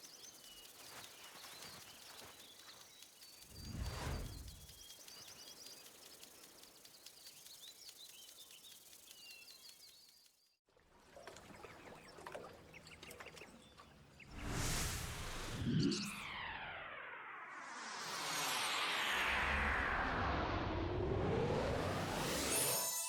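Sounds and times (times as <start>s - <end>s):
small birds chirping: 0.0s - 10.6s.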